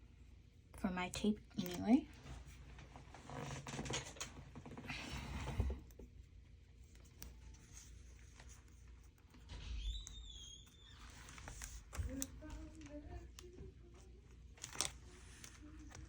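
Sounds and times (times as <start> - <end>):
paper and tape rustling: 5.2 - 16.0.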